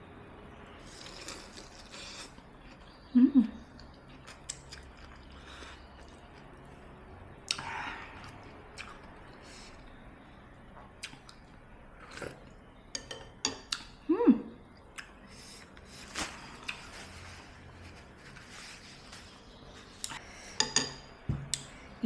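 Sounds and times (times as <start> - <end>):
spoon clinking against bowl: 12.9 - 13.8, 20.6 - 21.1.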